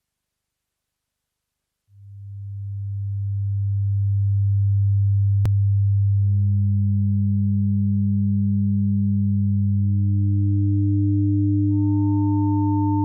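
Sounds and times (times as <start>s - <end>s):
deep pure synth tone: 2.0s - 13.0s
higher tone with overtones: 5.6s - 13.0s.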